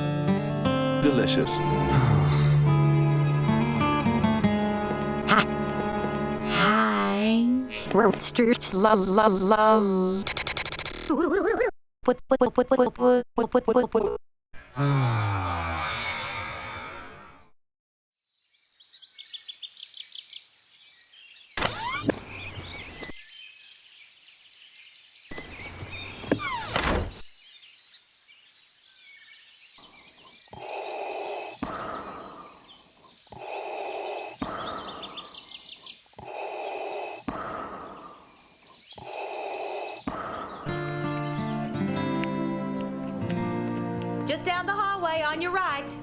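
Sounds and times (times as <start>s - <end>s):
birds chirping in trills: 18.4s - 41.8s.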